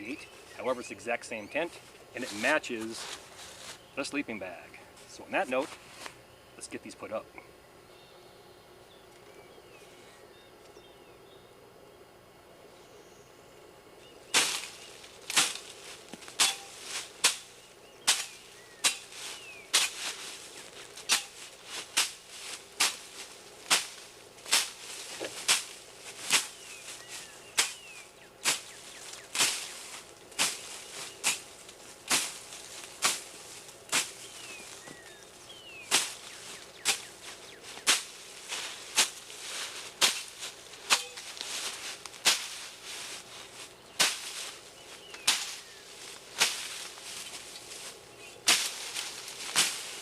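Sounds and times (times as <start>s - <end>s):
sharp cracks or knocks: 14.3s - 17.5s, 23.7s - 26.6s, 27.6s - 27.8s, 40.0s - 41.3s, 44.0s - 44.4s.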